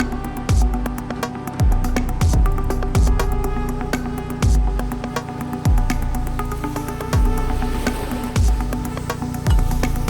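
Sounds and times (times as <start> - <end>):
deep bass kick: 0.0 - 1.0, 1.6 - 3.4, 4.4 - 5.0, 9.5 - 10.0
electronic music: 0.0 - 10.0.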